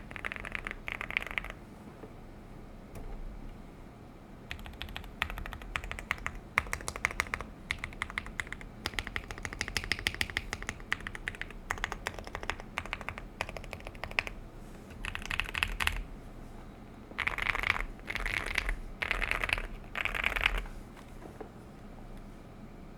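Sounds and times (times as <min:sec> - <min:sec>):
mechanical keyboard typing: 0:00.0 - 0:01.6, 0:04.5 - 0:16.1, 0:17.1 - 0:20.7.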